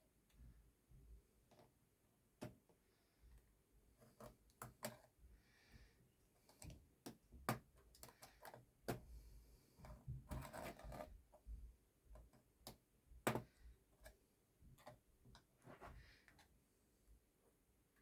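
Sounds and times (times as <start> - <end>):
screwdriver scraping plastic: 9.9 - 11.1.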